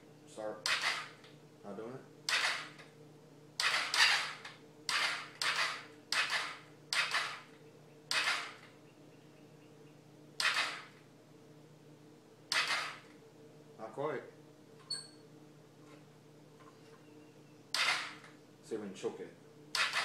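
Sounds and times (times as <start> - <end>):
electric starter clacks: 0.6 - 1.3, 2.3 - 2.9, 3.6 - 8.7, 10.4 - 11.0, 12.5 - 13.1, 17.7 - 18.4, 19.8 - 20.0.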